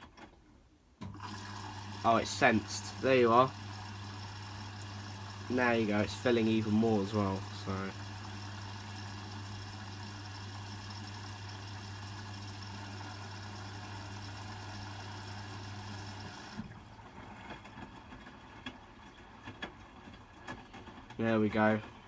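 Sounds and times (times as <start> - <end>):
washing machine inlet valve humming: 1.1 - 16.7
water hissing in: 1.2 - 10.7.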